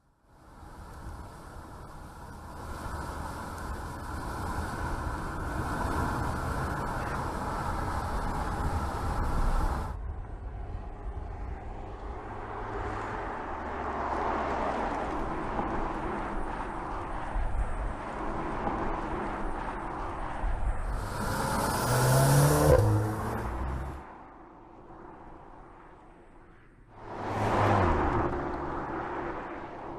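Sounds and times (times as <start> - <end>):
road noise: 0.0 - 29.9.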